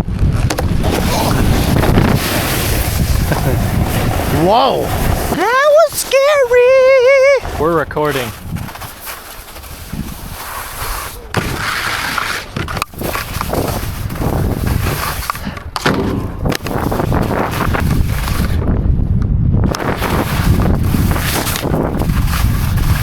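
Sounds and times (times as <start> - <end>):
wind on microphone: 0.0 - 23.0
snowboard scraping over snow: 0.1 - 18.7, 19.7 - 23.0
snowboard knocks: 0.3 - 5.6, 8.5 - 18.6.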